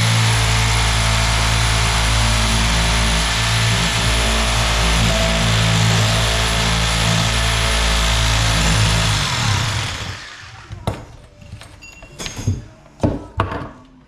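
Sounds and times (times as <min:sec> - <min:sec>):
power saw cutting: 0:00.0 - 0:10.8.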